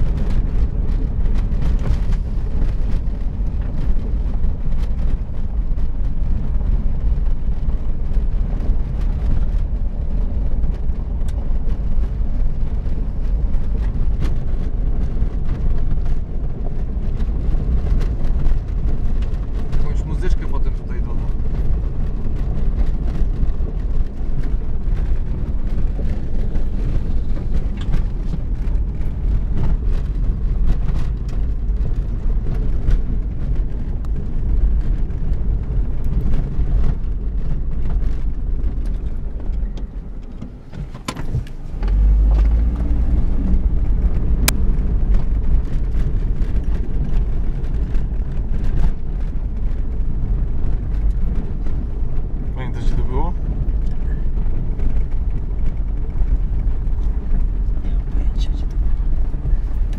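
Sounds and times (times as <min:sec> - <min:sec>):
car engine rumble: 0:00.0 - 0:59.9.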